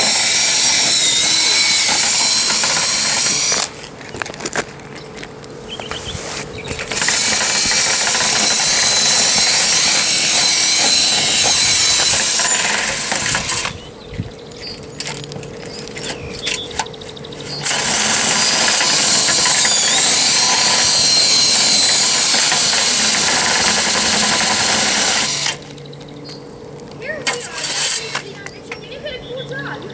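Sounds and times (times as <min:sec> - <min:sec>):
power tool motor whining: 0:00.0 - 0:04.3, 0:05.8 - 0:25.9, 0:27.2 - 0:28.8.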